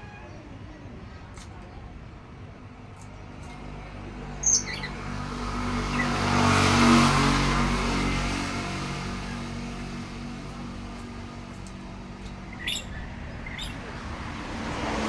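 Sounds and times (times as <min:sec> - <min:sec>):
vehicle passing by: 0:03.6 - 0:15.0
bird sharp chirp: 0:12.5 - 0:13.8.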